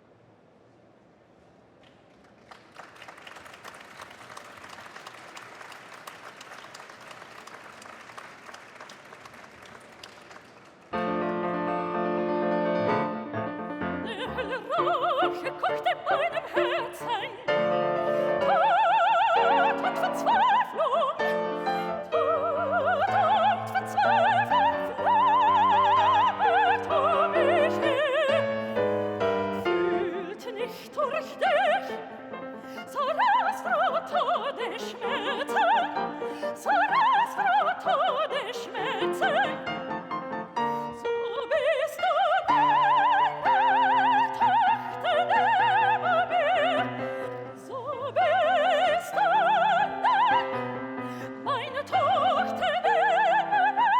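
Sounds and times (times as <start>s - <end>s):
operatic singing: 13.0s - 53.9s.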